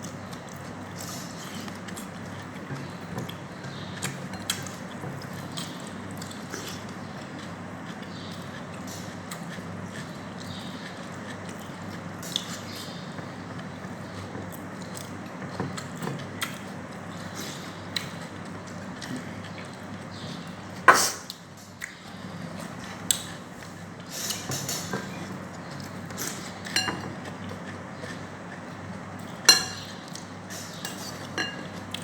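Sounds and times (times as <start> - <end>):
chewing noises: 0.0 - 32.0
utensils clinking on a plate: 26.2 - 27.3, 29.5 - 30.0, 30.8 - 31.9.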